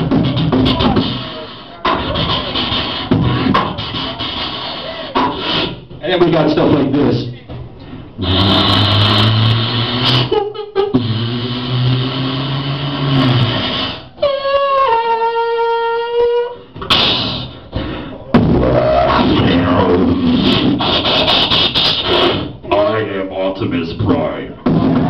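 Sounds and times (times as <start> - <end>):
man making vocal sound effects: 18.4 - 20.8.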